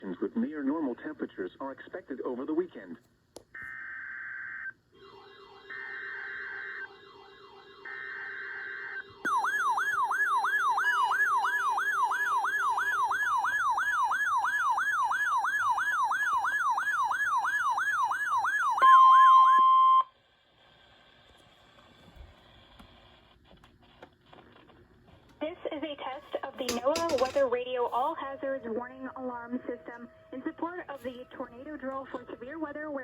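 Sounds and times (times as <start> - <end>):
electronic siren sweeping: 3.7 - 20.1, 27.8 - 33.0
steady warning alarm tone: 4.9 - 20.1, 26.4 - 33.0.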